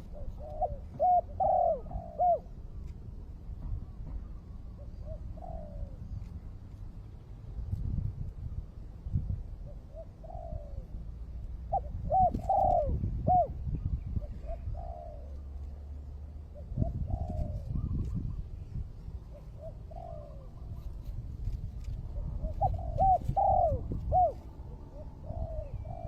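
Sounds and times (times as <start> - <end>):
dove cooing: 0.0 - 2.7, 4.7 - 6.3, 9.6 - 15.6, 16.4 - 18.5, 19.2 - 26.0.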